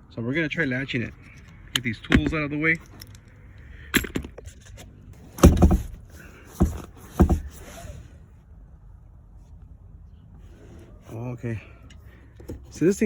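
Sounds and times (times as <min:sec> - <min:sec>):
knocks and clunks: 0:01.8 - 0:03.2, 0:03.8 - 0:07.8.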